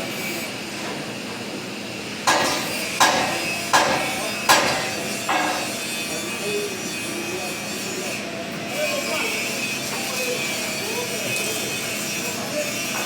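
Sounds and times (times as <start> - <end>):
hammer striking metal: 2.3 - 5.8.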